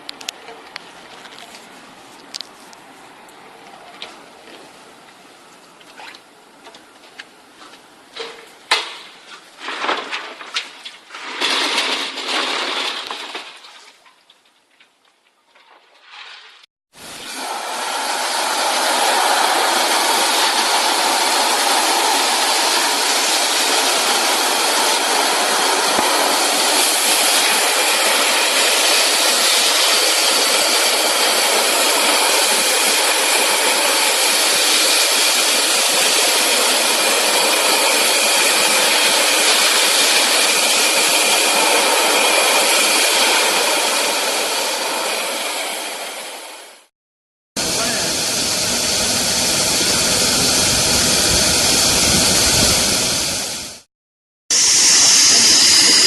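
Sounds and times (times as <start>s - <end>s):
vacuum cleaner rushing hiss: 17.0s - 46.9s, 47.6s - 53.9s, 54.5s - 56.0s.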